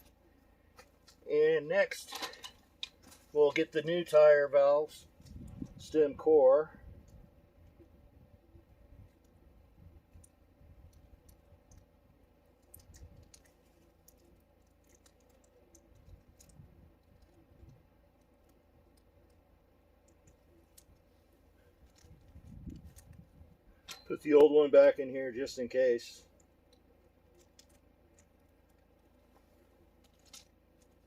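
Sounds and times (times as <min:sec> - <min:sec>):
small parts clicking and rattling: 0:01.9 - 0:03.4, 0:10.0 - 0:24.4, 0:26.3 - 0:31.0.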